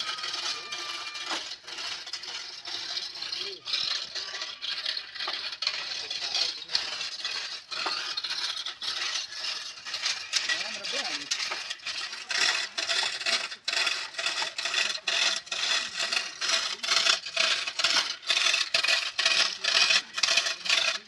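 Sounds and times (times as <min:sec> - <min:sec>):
rhythmic metallic scraping: 0:00.0 - 0:21.0.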